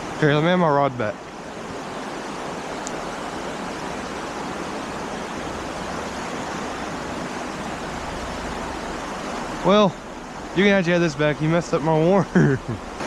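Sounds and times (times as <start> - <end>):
stream rapids rushing: 0.0 - 13.0.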